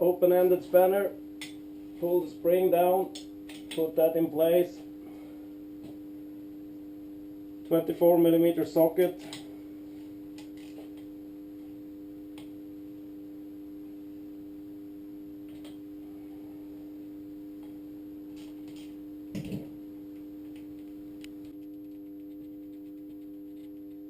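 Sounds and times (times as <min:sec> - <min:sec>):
steady hum of held tones: 0:00.0 - 0:24.0.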